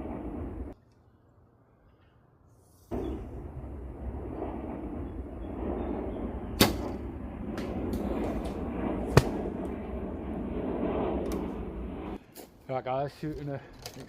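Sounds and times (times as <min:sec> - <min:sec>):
rumbling noise: 0:00.0 - 0:00.8, 0:02.9 - 0:12.2.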